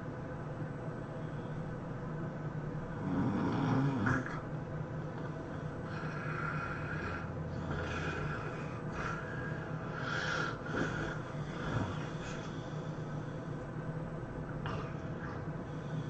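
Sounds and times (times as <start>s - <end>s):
steady low hum: 0.0s - 16.0s
person snoring: 3.0s - 4.4s, 5.8s - 13.0s.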